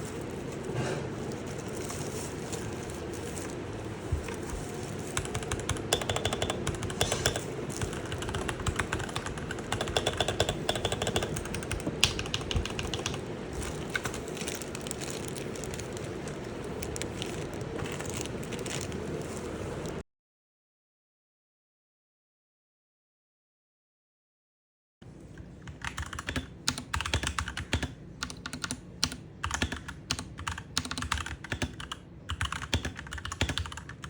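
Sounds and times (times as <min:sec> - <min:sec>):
steady low hum: 0:00.0 - 0:20.0
mechanical keyboard keys clacking: 0:04.2 - 0:19.2, 0:25.6 - 0:34.0.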